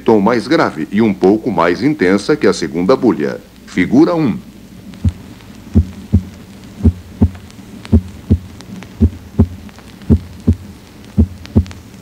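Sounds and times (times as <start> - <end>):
heartbeat lub-dub thuds: 4.8 - 12.0.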